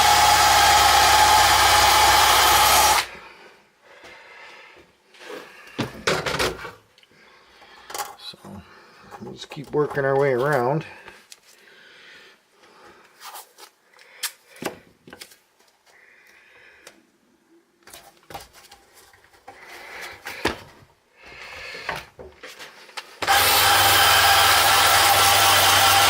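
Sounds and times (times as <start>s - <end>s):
high-speed power tool whining: 0.0s - 3.1s, 23.2s - 26.0s.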